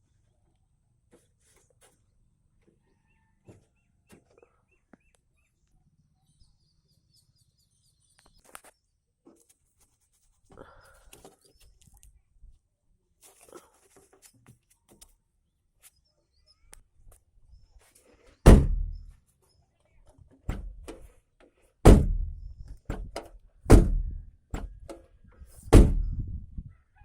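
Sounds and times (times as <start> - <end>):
car door shutting thuds: 18.5 - 19.0, 21.9 - 22.3, 23.7 - 24.7, 25.7 - 26.1
door latch and handle knocks: 21.9 - 25.0.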